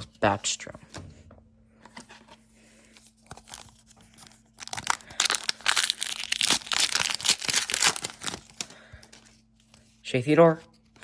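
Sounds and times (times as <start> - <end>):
plastic wrapper crinkling and tearing: 3.3 - 9.3.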